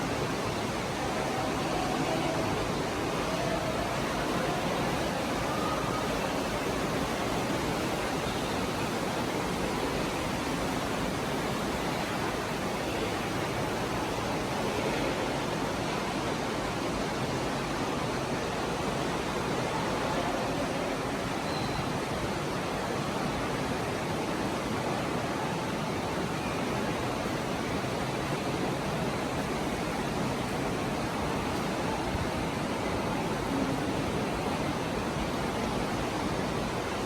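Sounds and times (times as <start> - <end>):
water rushing: 0.0 - 37.0.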